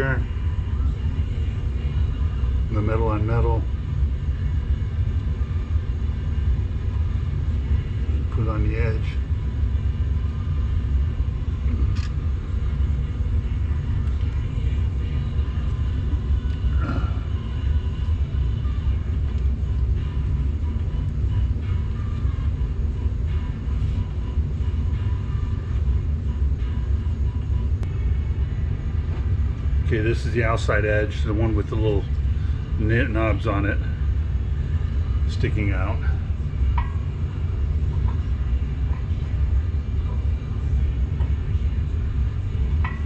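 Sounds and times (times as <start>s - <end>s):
low rumble: 0.0s - 43.0s.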